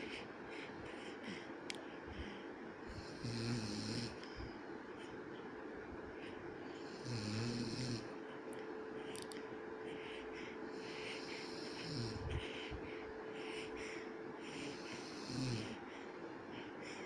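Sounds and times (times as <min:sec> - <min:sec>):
man snoring: 0:02.9 - 0:04.2, 0:06.8 - 0:08.1, 0:10.8 - 0:12.3, 0:14.6 - 0:15.8.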